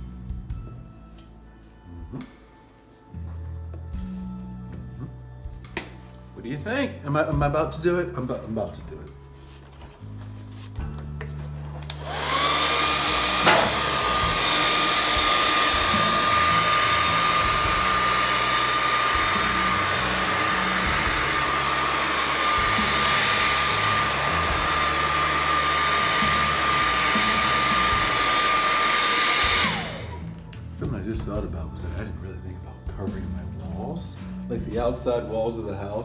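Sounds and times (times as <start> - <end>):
hair dryer running: 11.6 - 30.7.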